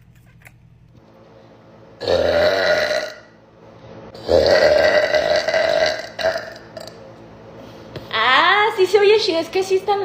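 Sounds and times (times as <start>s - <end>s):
woman burping deeply: 2.0s - 3.3s, 4.2s - 7.0s.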